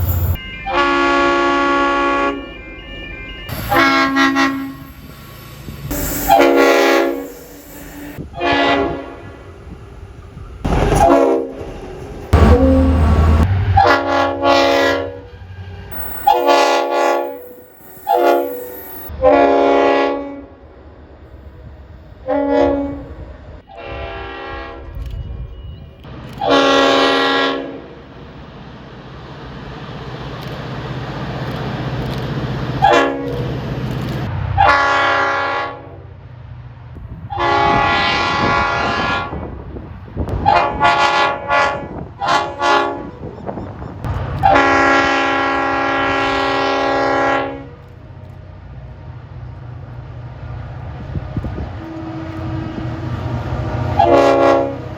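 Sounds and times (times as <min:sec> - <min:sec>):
train horn blasts: 0:00.0 - 0:05.1, 0:05.9 - 0:09.4, 0:10.9 - 0:11.6, 0:12.4 - 0:20.6, 0:22.2 - 0:25.4, 0:26.4 - 0:28.0, 0:32.8 - 0:33.5, 0:34.6 - 0:36.0, 0:37.3 - 0:39.6, 0:40.3 - 0:43.6, 0:44.4 - 0:47.9, 0:51.4 - 0:54.9
passing train rumble: 0:00.0 - 0:54.9.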